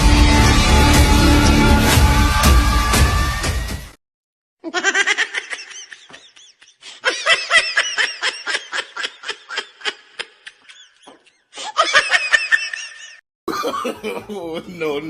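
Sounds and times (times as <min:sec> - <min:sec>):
high-pitched laughing: 0:04.6 - 0:14.3.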